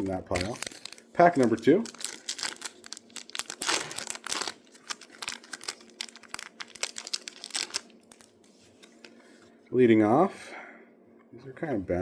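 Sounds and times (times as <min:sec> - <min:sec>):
foil wrapper tearing and crinkling: 0:00.0 - 0:09.1.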